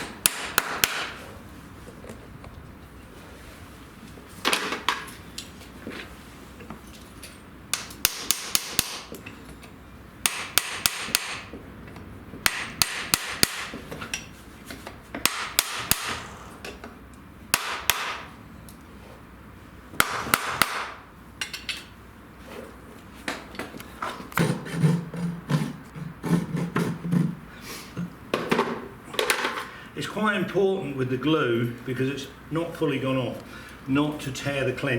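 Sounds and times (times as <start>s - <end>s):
hammer tapping nails: 0.0s - 1.2s, 7.7s - 9.2s, 10.2s - 11.5s, 12.4s - 13.8s, 15.2s - 16.2s, 17.6s - 18.3s, 20.0s - 21.0s.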